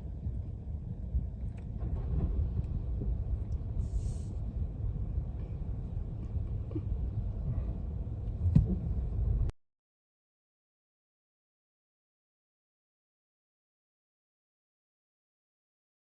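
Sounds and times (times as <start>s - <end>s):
strong wind buffeting microphone: 0.0s - 9.5s.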